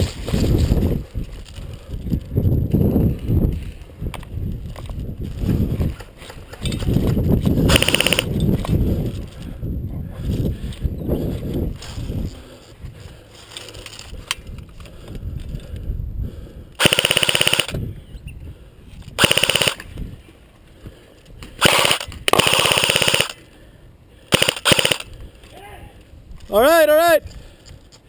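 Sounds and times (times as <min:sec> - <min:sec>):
airsoft guns firing bursts: 0:07.7 - 0:08.3, 0:16.8 - 0:17.8, 0:19.2 - 0:19.8, 0:21.6 - 0:23.4, 0:24.3 - 0:25.1.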